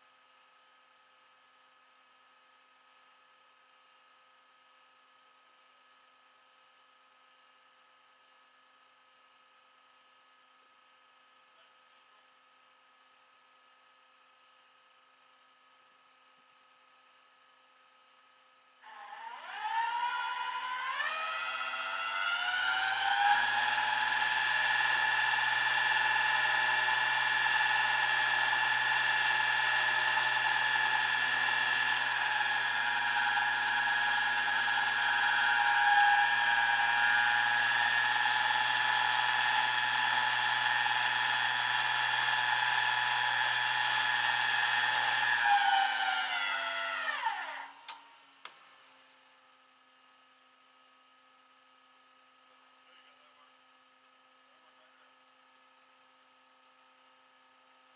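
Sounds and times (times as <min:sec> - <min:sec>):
motor whining: 0:18.9 - 0:48.0.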